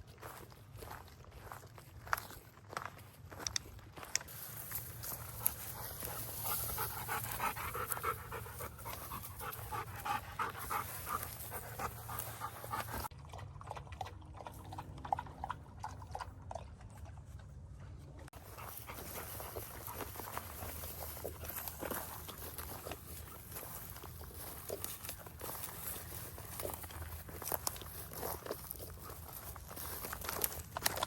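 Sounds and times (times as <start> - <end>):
dog panting: 4.4 - 13.1, 18.4 - 31.0.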